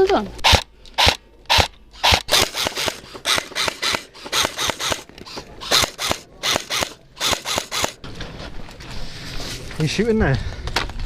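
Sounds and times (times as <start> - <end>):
airsoft rifle shots: 0.4 - 8.0.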